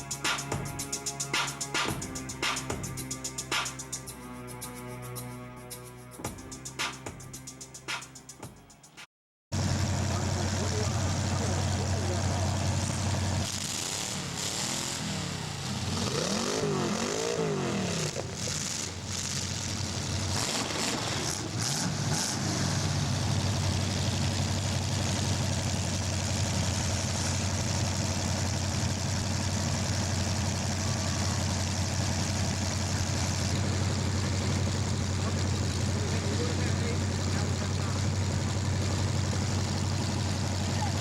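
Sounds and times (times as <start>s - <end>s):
car engines revving: 9.6s - 41.0s.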